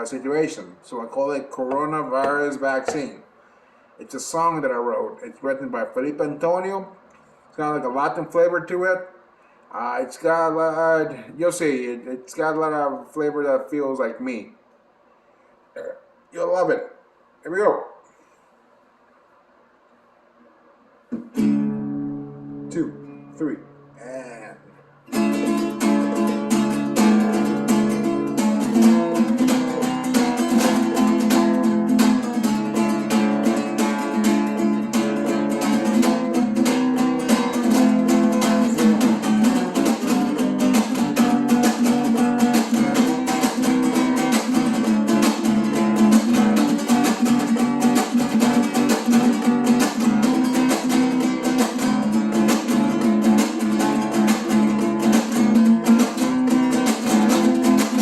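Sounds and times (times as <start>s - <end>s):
acoustic guitar strummed rapidly: 1.6s - 3.2s, 25.1s - 58.0s.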